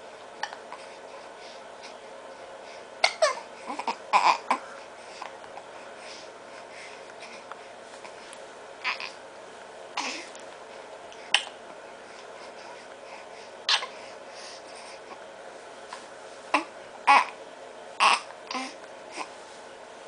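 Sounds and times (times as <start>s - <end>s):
baby hiccuping: 13.7s - 13.9s, 18.0s - 18.6s.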